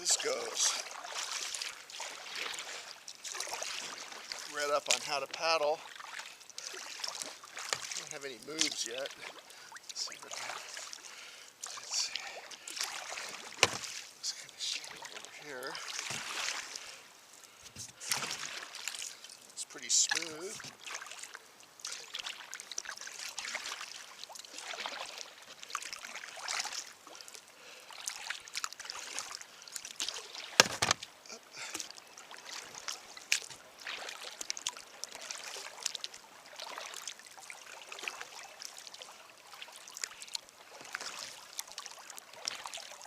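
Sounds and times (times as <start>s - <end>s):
water dripping off paddle: 0.0s - 16.9s
paddle strokes swishing through water: 0.0s - 43.0s.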